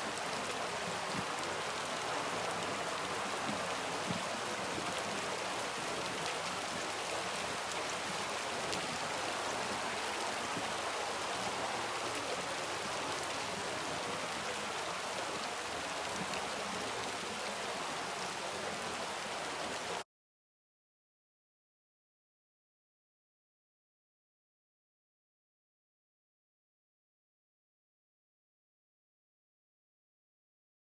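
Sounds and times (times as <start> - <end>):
soft steady rain: 0.0 - 20.0.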